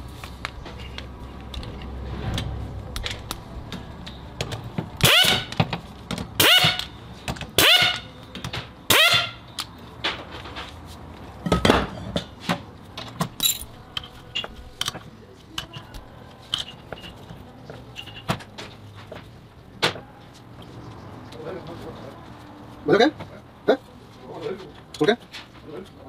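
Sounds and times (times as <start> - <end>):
metal parts clicking and knocking: 13.1 - 15.0.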